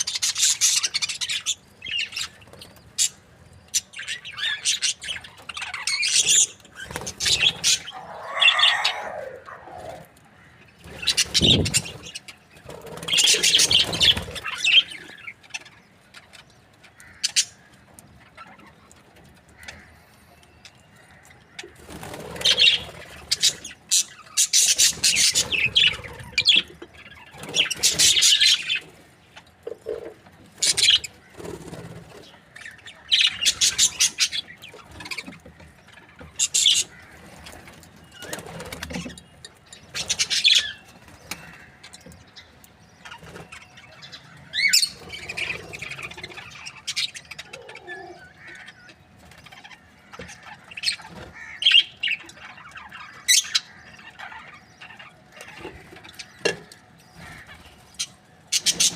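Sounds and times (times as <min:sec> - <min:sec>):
budgerigars chirping and chattering: 0:00.0 - 0:58.9.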